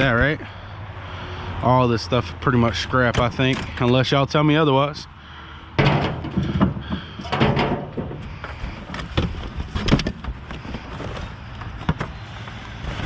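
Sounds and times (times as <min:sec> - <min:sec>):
metal car parts clanking: 0:02.6 - 0:04.2, 0:05.7 - 0:12.2.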